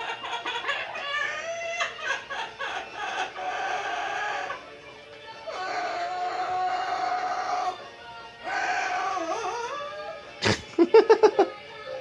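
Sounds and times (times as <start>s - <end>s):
parrot calling: 0.0s - 4.8s, 5.4s - 10.3s.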